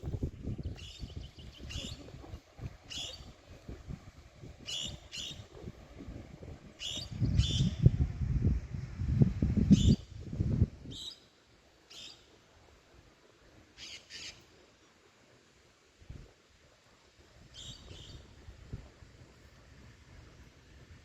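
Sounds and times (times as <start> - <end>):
bird calling: 13.8 - 14.4.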